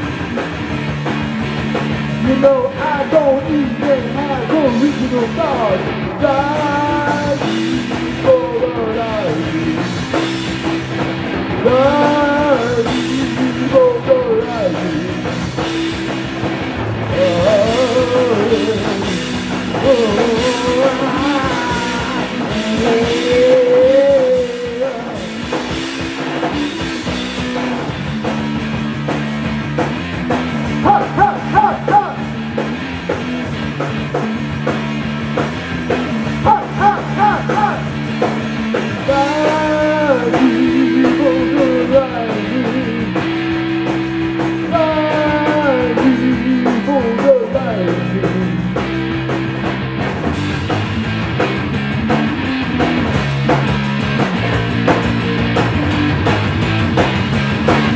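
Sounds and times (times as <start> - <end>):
instrumental rock band: 0.0 - 57.9.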